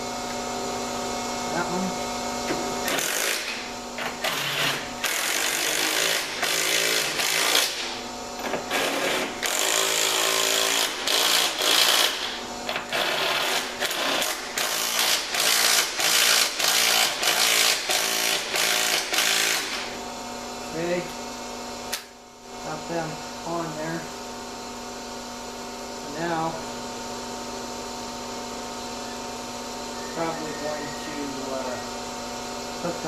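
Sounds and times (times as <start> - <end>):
impact wrench running bolts: 2.5 - 20.0.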